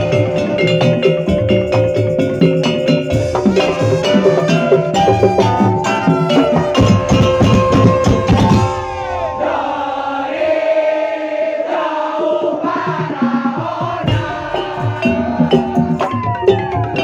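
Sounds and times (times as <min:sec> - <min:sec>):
drums steady beat: 0:00.0 - 0:09.4, 0:12.3 - 0:17.0
wavering melodic line: 0:00.0 - 0:10.3.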